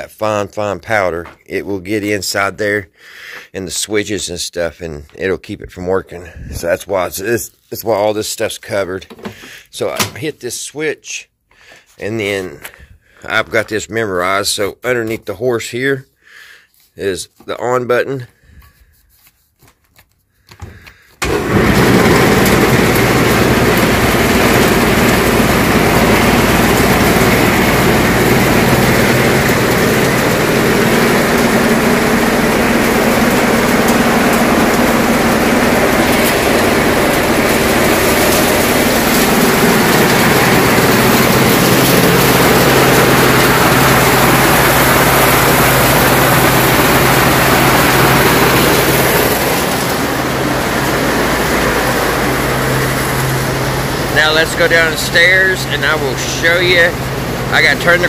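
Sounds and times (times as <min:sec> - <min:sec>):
mill motor whirring: 0:21.2 - 0:54.2.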